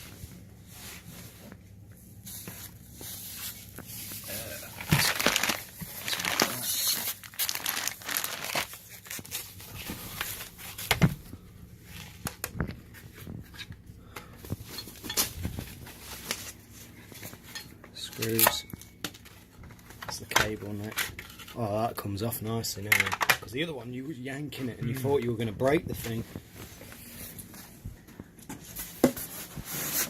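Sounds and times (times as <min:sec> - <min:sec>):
packaging crinkling and rustling: 0:02.3 - 0:13.7, 0:14.4 - 0:17.4.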